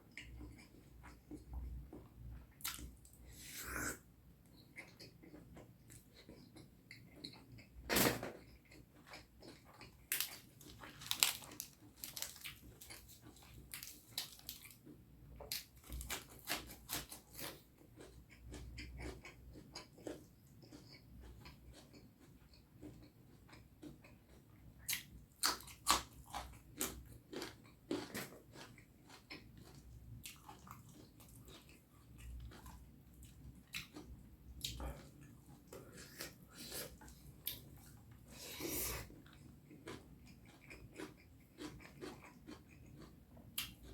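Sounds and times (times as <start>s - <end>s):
chewing and wet mouth smacks: 2.6s - 3.2s, 18.0s - 36.4s, 39.2s - 43.9s.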